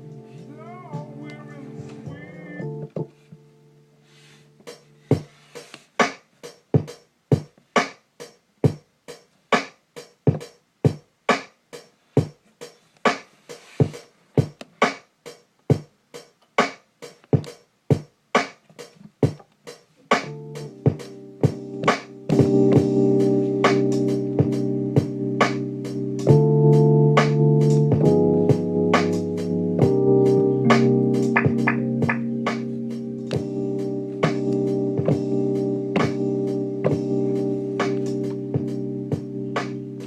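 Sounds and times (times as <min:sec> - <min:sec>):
sampled tonal loop: 0:00.0 - 0:02.9, 0:20.3 - 0:40.0.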